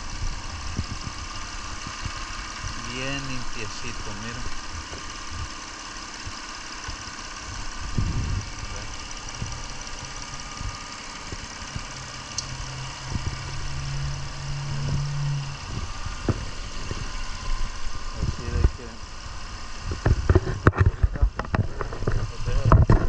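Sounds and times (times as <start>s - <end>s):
car engine idling: 0.0s - 23.0s
short engine knocks: 19.9s - 23.0s.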